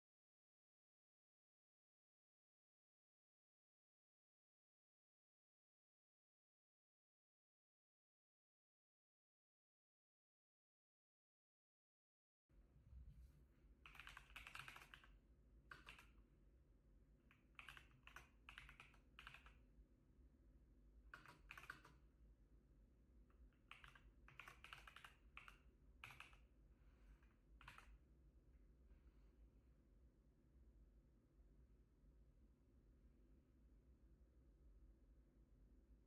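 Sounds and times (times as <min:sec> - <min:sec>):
mechanical keyboard typing clicks: 0:13.9 - 0:15.1, 0:15.7 - 0:16.2, 0:17.3 - 0:19.6, 0:21.1 - 0:22.0, 0:23.6 - 0:26.4, 0:27.6 - 0:28.0.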